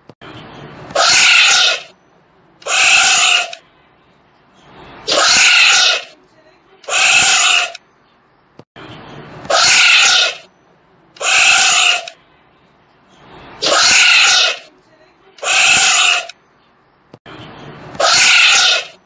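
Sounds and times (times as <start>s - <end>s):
tapir squealing calls: 1.0s - 1.9s, 2.6s - 3.6s, 5.1s - 6.2s, 6.8s - 7.8s, 9.5s - 10.5s, 11.2s - 12.2s, 13.6s - 14.7s, 15.4s - 16.4s, 18.0s - 19.0s.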